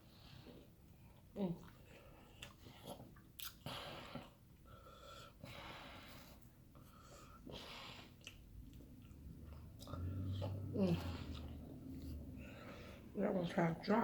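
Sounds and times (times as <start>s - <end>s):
person chewing food: 0.3s - 5.4s, 6.1s - 13.1s
faint breathing: 3.6s - 8.2s, 9.9s - 13.2s.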